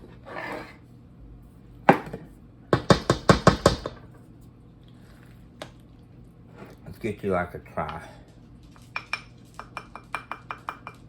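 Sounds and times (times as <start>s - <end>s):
spoon knocking on bowl rim: 9.0s - 11.0s.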